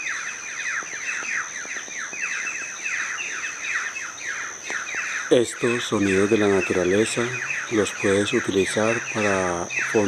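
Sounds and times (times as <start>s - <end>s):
birds singing: 0.0s - 10.0s
steady high-pitched tone: 5.3s - 10.0s.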